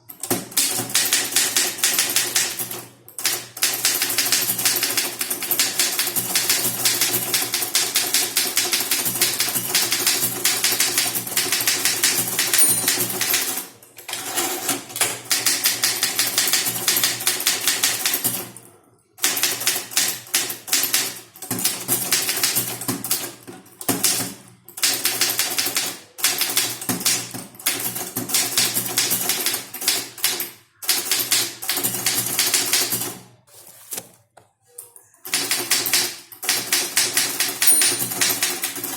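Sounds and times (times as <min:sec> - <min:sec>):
typewriter key strikes: 0:00.1 - 0:13.6, 0:35.3 - 0:38.9.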